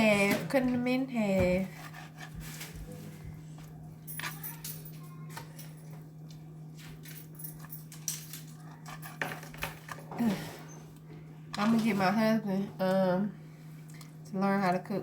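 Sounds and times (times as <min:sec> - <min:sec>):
steady low hum: 0:00.0 - 0:15.0
knife cutting on cutting board: 0:01.6 - 0:02.8.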